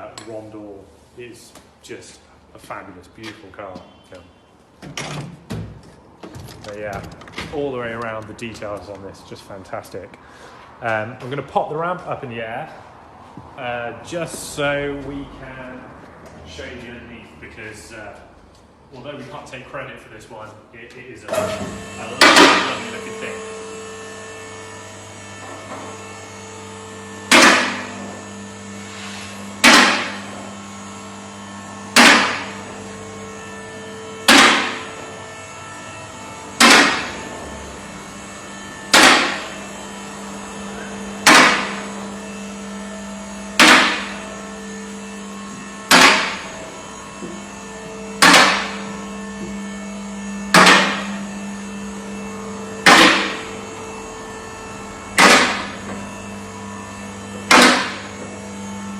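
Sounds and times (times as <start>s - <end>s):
car lift motor hum: 21.2s - 58.9s.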